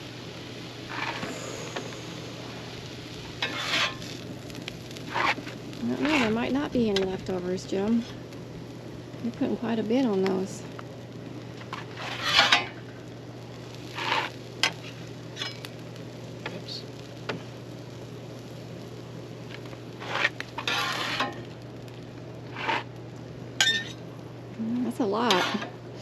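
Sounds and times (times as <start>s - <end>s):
food sizzling on hot plate: 0.0s - 26.0s
metal tools scraping on griddle: 0.9s - 1.8s, 3.4s - 4.1s, 5.1s - 7.2s, 11.7s - 12.8s, 13.9s - 15.7s, 20.0s - 21.5s, 22.5s - 22.9s, 23.6s - 24.0s, 25.1s - 25.7s.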